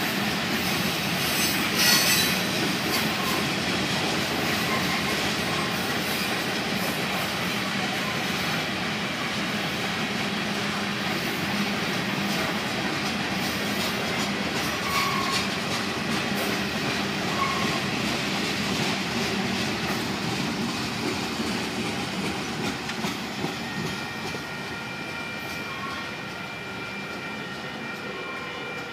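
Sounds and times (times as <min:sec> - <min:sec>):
wheel squeals: 0:01.2 - 0:03.5, 0:14.6 - 0:15.6, 0:17.3 - 0:17.9.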